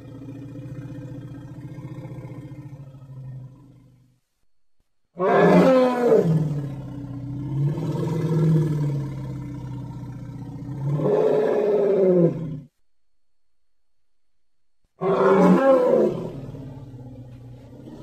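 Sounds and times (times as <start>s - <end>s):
creature roaring: 15.0s - 16.6s.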